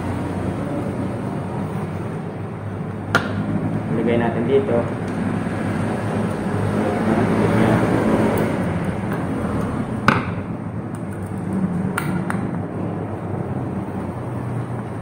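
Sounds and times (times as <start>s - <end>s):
low rumbling background noise: 0.0s - 15.0s.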